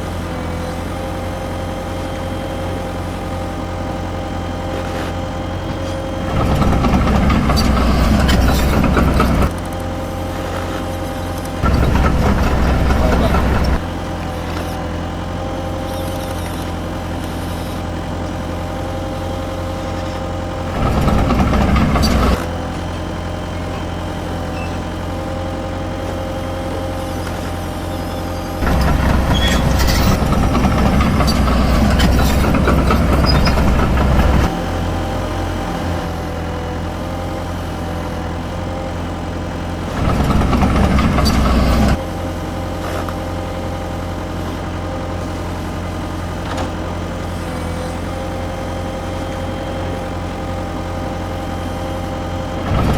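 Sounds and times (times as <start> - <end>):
electric motor and gear noise: 0.1 - 52.9
toy excavator hum: 4.6 - 18.0.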